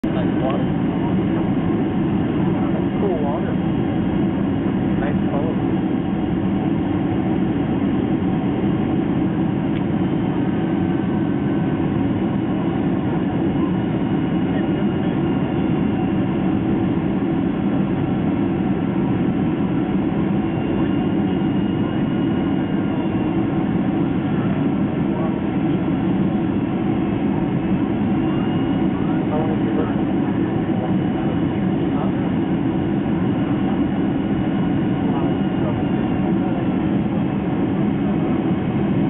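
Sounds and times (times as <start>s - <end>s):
aircraft cabin engine drone: 0.0s - 39.0s.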